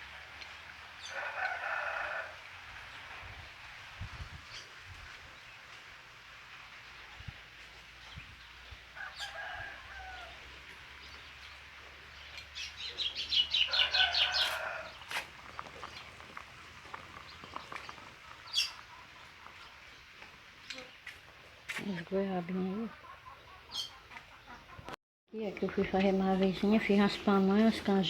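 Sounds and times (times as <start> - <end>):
chickens calling: 9.0 - 21.2, 22.6 - 25.0.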